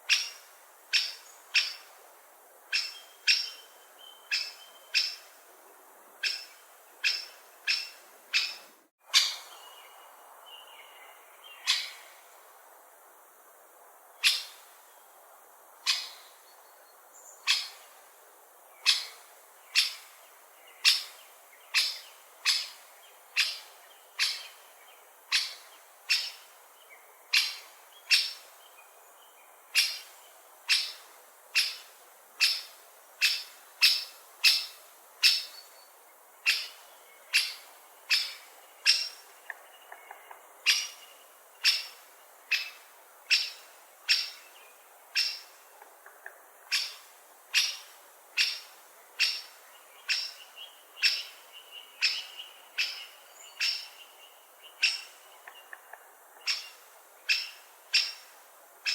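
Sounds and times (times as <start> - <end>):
woodpecker calling: 0.1 - 1.9, 2.7 - 5.4, 6.2 - 9.7, 11.6 - 12.2, 14.2 - 14.6, 15.8 - 16.3, 17.4 - 17.9, 18.8 - 20.2, 20.8 - 24.7, 25.3 - 26.6, 27.3 - 28.6, 29.7 - 35.7, 36.4 - 58.9.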